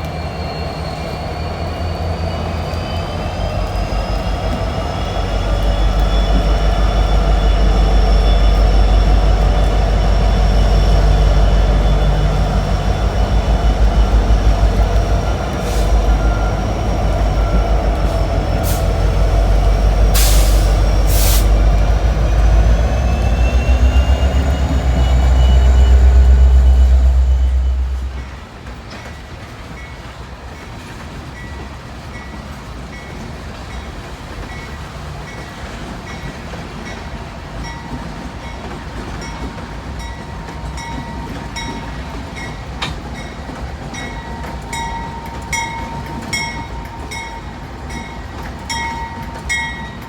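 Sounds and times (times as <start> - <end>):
wheel squeals: 0.0 - 28.4
diesel locomotive rumble: 0.0 - 50.0
short hisses: 20.0 - 21.7.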